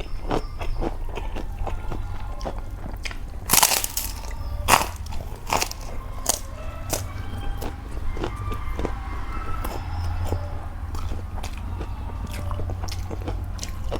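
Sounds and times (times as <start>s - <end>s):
person chewing and biting: 0.0s - 8.9s.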